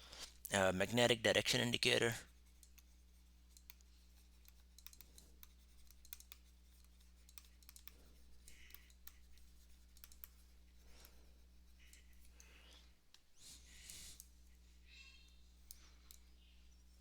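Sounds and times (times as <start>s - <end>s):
low electrical hum: 0.0s - 17.0s
faint small clicks: 3.5s - 9.2s, 9.9s - 10.4s, 15.3s - 16.3s.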